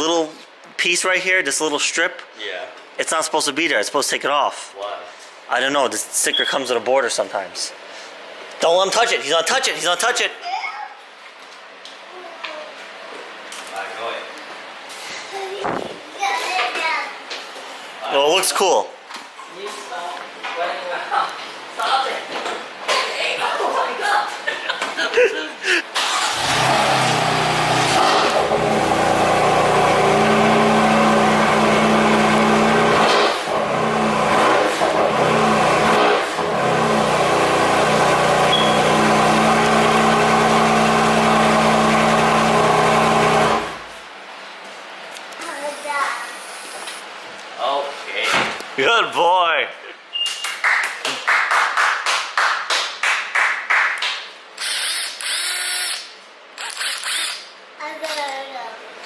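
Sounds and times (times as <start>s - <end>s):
motor running loudly: 26.3s - 43.9s.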